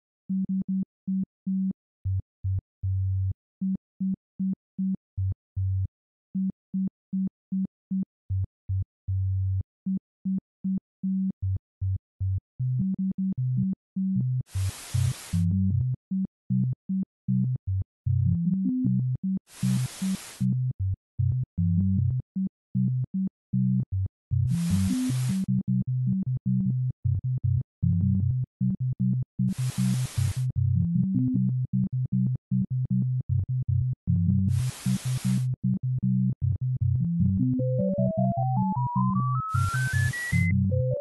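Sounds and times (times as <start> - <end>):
burst of hiss: 14.5 - 15.4, 19.5 - 20.4, 24.8 - 25.4, 29.5 - 30.4, 34.6 - 35.4.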